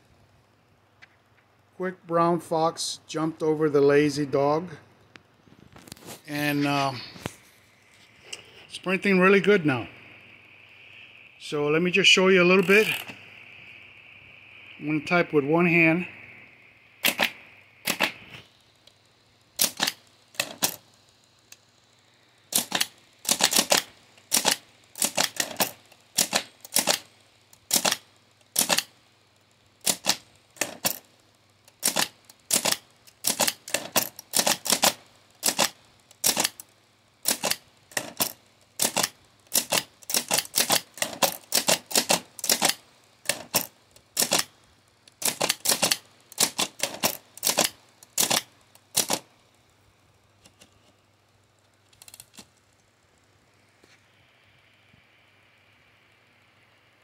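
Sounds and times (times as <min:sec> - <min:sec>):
typewriter keystroke clacks: 0:17.0 - 0:18.2, 0:19.6 - 0:20.8, 0:22.5 - 0:27.0, 0:27.7 - 0:28.9, 0:29.8 - 0:31.0, 0:31.8 - 0:36.6, 0:37.2 - 0:44.5, 0:45.2 - 0:49.2.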